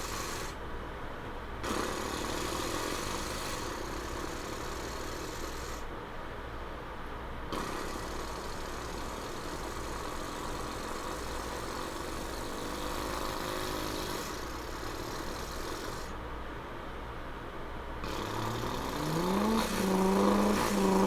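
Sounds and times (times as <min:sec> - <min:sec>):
person imitating car engine: 0:18.0 - 0:21.0.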